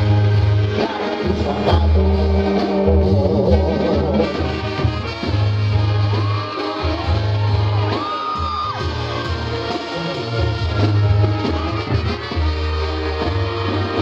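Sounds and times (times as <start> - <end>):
tuba bass line: 0.0 - 8.0, 8.6 - 14.0
brass melody: 0.0 - 14.0.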